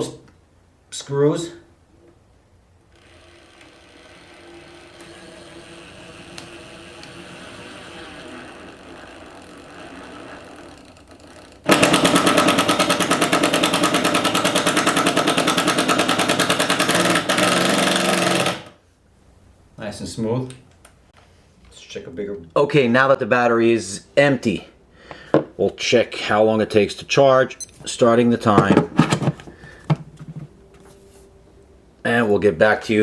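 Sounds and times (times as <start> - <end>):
impact driver motor whirring: 2.9 - 18.7
impact driver hammer rattle: 11.7 - 18.7, 28.6 - 30.6.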